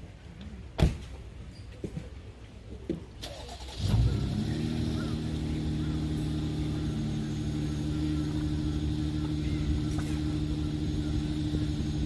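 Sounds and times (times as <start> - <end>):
car engine starting and idling: 3.2 - 12.0.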